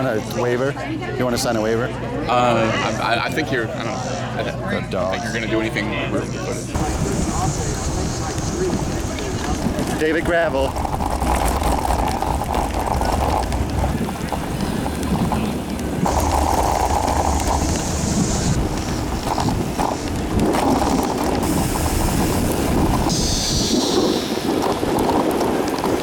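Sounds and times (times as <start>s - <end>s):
faint voices: 0.0s - 26.0s
wind buffeting microphone: 6.7s - 26.0s.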